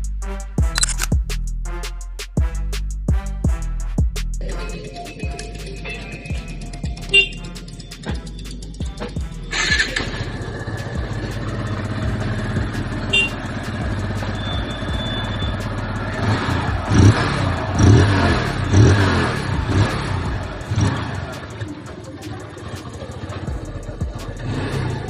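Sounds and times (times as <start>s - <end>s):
motorcycle engine revving: 5.6s - 25.0s.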